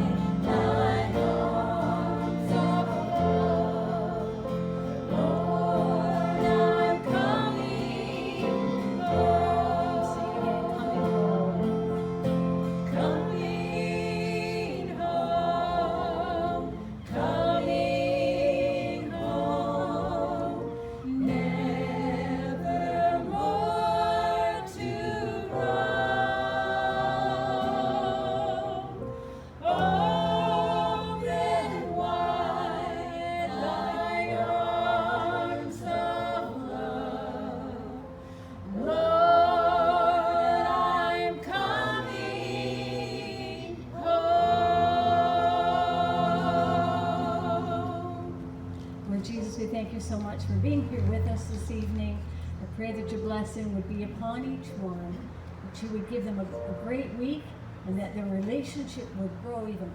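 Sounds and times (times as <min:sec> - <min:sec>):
group singing a hymn in harmony: 0:00.0 - 0:57.9.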